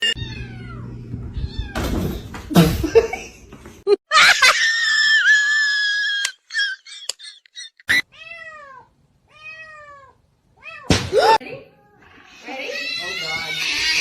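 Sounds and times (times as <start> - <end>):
high-pitched cat cry: 0.0 - 1.8, 7.9 - 10.9, 11.7 - 14.0.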